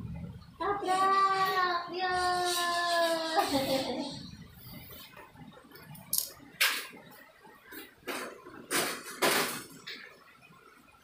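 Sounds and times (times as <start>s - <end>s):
plastic toy cars clattering: 8.1s - 10.0s.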